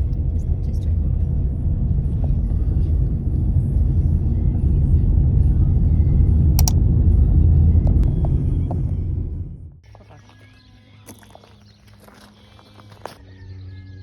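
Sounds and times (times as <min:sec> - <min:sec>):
car rumble from inside: 0:00.0 - 0:09.8.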